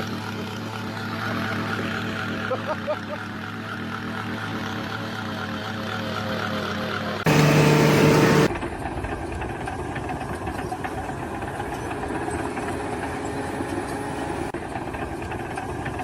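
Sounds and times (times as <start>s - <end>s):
loud steady tone: 7.3s - 8.5s
motor engine running: 7.3s - 8.5s.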